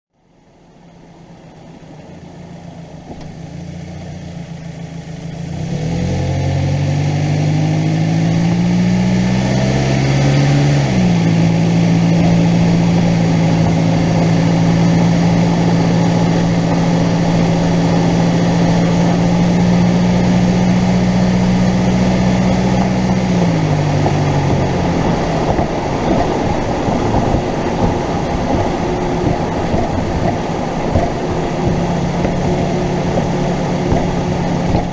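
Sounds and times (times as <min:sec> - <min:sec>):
road rumble: 0:00.1 - 0:34.9
car engine accelerating: 0:00.2 - 0:34.9
low knocks from suspension: 0:21.6 - 0:34.9.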